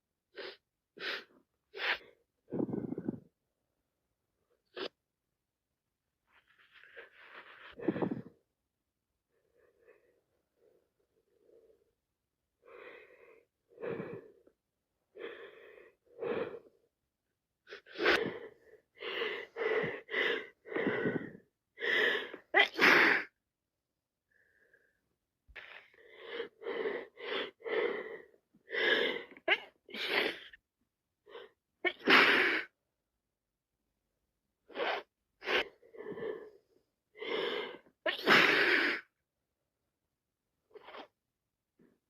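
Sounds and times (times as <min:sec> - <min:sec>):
woman sneezing: 0:22.6 - 0:23.3, 0:38.1 - 0:39.0.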